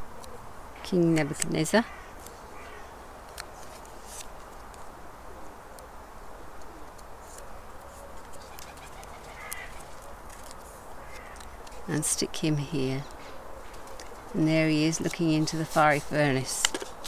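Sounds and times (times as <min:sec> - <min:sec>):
paper being handled: 0:03.3 - 0:04.9, 0:13.7 - 0:17.0.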